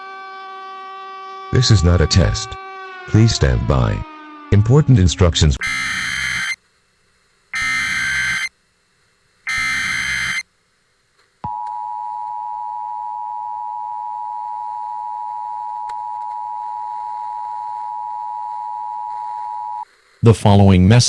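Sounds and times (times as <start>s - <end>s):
digital data bursts: 5.6s - 6.6s, 7.5s - 8.5s, 9.5s - 10.4s
two-tone attention signal: 5.6s - 6.6s, 7.6s - 8.5s, 9.5s - 10.4s.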